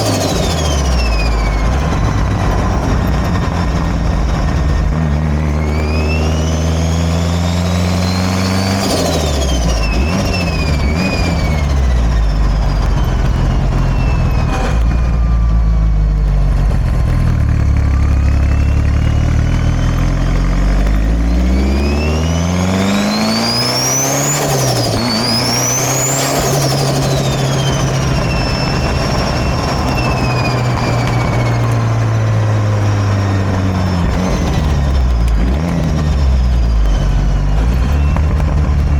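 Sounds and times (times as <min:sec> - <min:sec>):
car engine revving: 0:00.0 - 0:38.9
turbo whine: 0:00.0 - 0:38.9.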